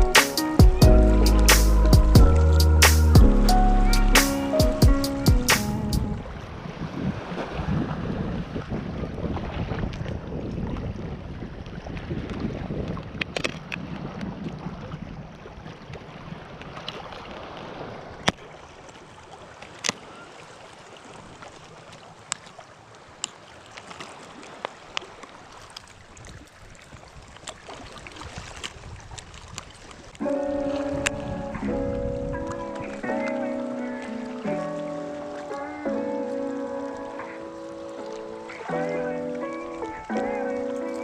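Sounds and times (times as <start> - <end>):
wind on microphone: 0.0 - 18.2, 26.0 - 41.0
lapping water: 18.2 - 41.0.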